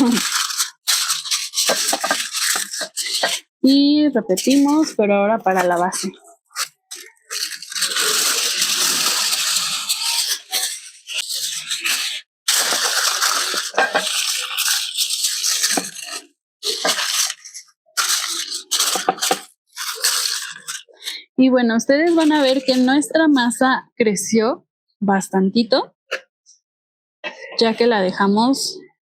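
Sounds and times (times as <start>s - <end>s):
aluminium foil crinkling: 0.0s - 21.2s, 21.9s - 23.1s.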